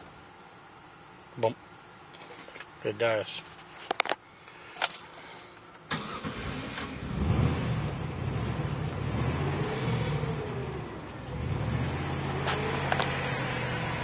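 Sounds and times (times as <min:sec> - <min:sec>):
van engine starter cranking: 0:05.9 - 0:11.6
van engine revving: 0:05.9 - 0:14.0.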